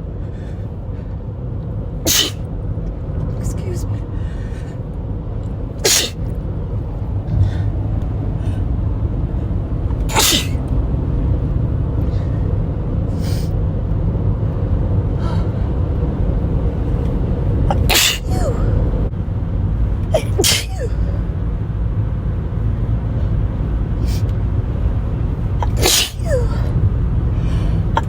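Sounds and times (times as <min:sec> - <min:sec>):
car cabin rumble: 0:00.0 - 0:28.0
person sneezing: 0:02.1 - 0:02.4, 0:05.8 - 0:06.2, 0:10.1 - 0:10.6, 0:17.7 - 0:18.7, 0:20.2 - 0:21.0, 0:25.6 - 0:26.6.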